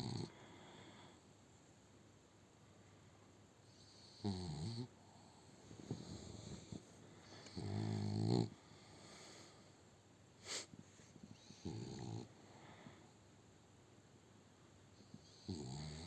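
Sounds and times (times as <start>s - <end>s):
dog snoring: 0.0s - 0.3s, 3.7s - 5.4s, 6.0s - 8.8s, 11.3s - 12.3s, 15.2s - 16.0s.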